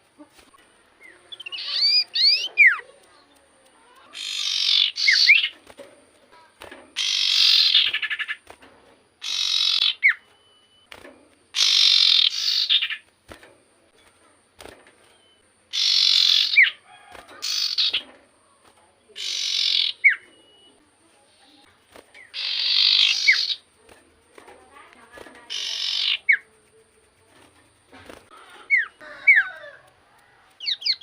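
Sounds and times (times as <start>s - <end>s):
bird chattering calls: 0.4s - 3.2s, 3.8s - 5.6s, 6.9s - 8.5s, 9.2s - 10.3s, 11.5s - 13.1s, 15.2s - 16.8s, 17.4s - 18.1s, 19.2s - 20.6s, 22.2s - 23.8s, 25.3s - 26.5s, 28.3s - 29.6s, 30.6s - 31.0s.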